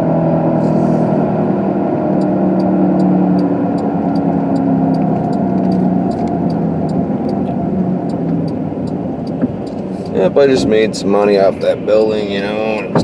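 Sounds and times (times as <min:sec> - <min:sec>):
car engine running: 0:00.0 - 0:13.0
light ticking: 0:02.2 - 0:10.2.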